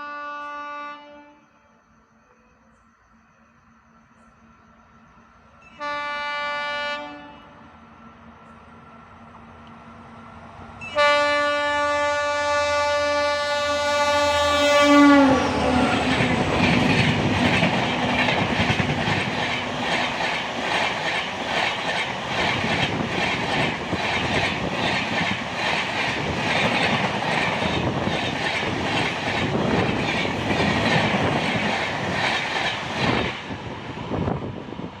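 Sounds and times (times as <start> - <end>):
train horn blast: 0.0 - 1.5, 5.7 - 7.7, 10.8 - 18.6
train wheel clatter: 15.5 - 33.6.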